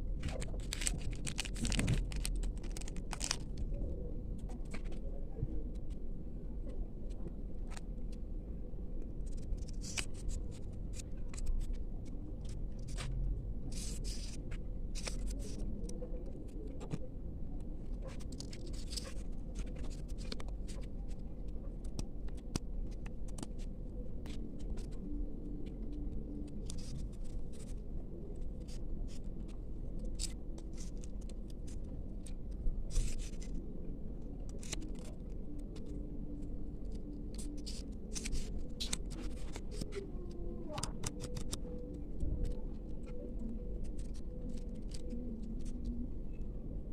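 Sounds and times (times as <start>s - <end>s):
low hum: 0.0s - 46.9s
packaging rustling and crinkling: 0.2s - 3.7s.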